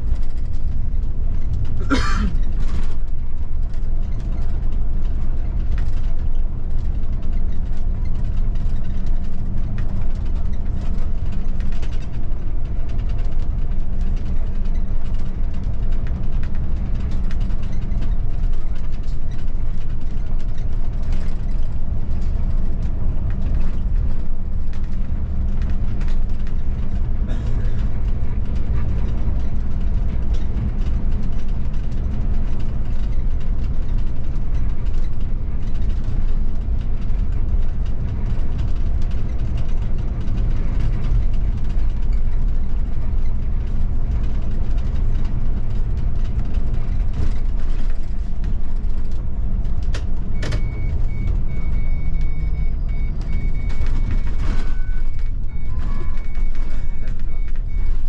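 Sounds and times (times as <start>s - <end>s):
bus engine and road rumble: 0.0s - 58.0s.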